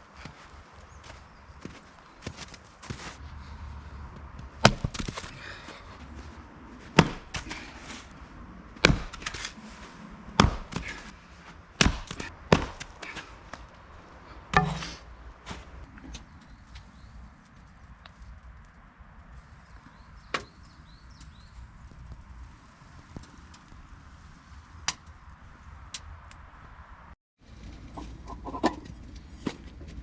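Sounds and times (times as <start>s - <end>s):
axe chopping firewood: 4.4s - 5.6s, 6.9s - 8.0s, 8.8s - 9.6s, 10.3s - 11.2s, 11.8s - 13.6s, 14.5s - 15.6s, 29.3s - 29.9s.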